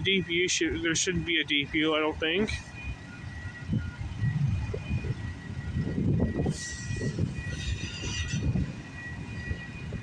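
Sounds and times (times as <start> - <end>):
faint high squeal: 6.3 - 9.7.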